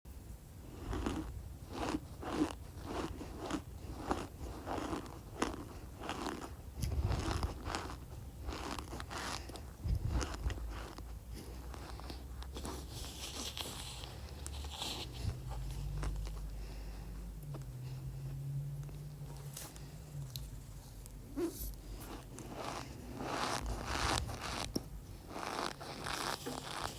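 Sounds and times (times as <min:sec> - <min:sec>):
cornstarch crunching and squeaking: 0:00.8 - 0:16.2, 0:21.5 - 0:26.9.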